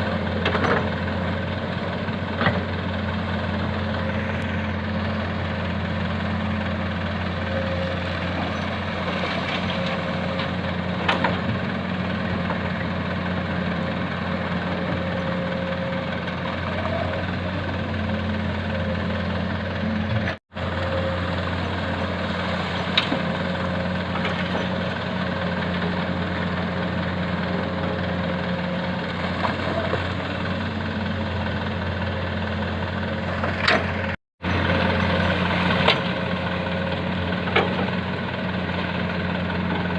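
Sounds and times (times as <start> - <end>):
heavy diesel engine humming: 0.0 - 39.9.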